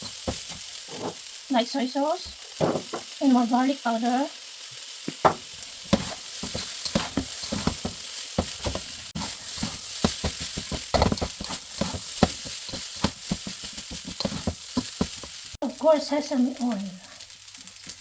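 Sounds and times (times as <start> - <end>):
spatula scraping and knocking pan: 0.0 - 1.2, 5.3 - 15.5
rice sizzling in a hot pan: 0.0 - 18.0.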